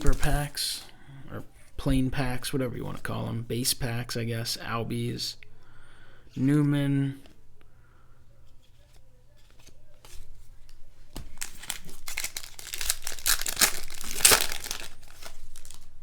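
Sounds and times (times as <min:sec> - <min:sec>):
plastic wrapper crinkling and tearing: 0:11.2 - 0:16.0.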